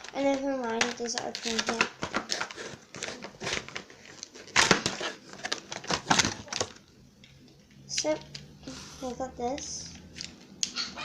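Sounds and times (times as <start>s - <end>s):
packaging tearing and crinkling: 0.0s - 6.8s.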